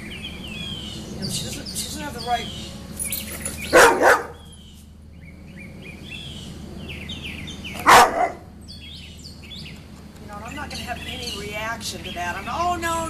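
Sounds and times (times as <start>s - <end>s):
birds chirping: 0.0s - 13.0s
dog barking: 3.6s - 4.5s, 7.8s - 8.5s.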